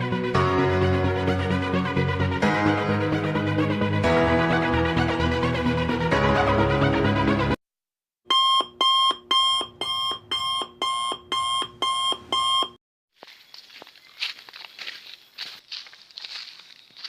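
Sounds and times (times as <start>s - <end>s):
alarm clock beeping: 8.3s - 12.8s.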